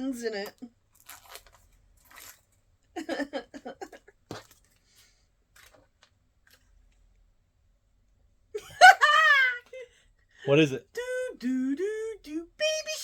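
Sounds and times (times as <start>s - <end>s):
plastic packaging crinkling: 0.9s - 2.6s.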